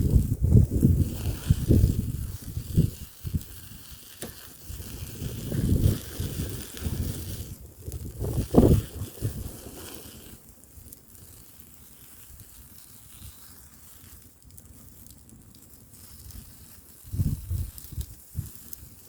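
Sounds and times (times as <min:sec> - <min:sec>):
wind gusts rumbling on microphone: 0:00.0 - 0:04.0, 0:04.6 - 0:10.0, 0:17.1 - 0:19.0
fire crackling: 0:00.0 - 0:19.0.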